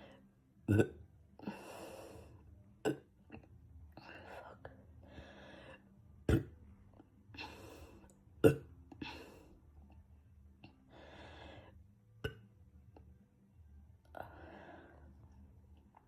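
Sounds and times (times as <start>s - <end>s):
man burping: 0.7s - 1.0s, 2.8s - 3.1s, 6.3s - 6.5s, 8.4s - 8.7s.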